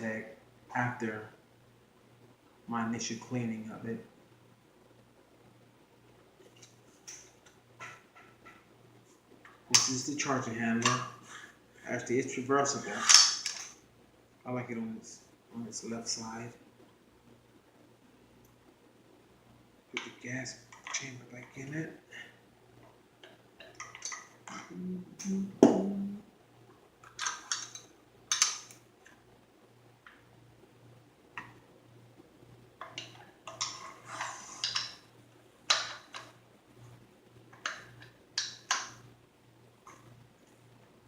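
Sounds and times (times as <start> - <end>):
metallic clicks: 27.0 - 28.8
short scrapes: 33.8 - 34.6.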